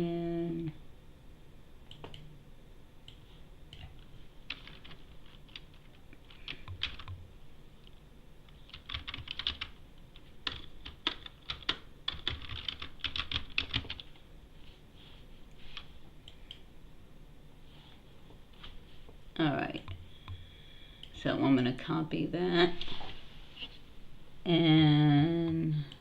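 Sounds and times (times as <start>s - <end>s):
typing on computer keyboard: 3.8s - 7.2s, 8.7s - 14.2s.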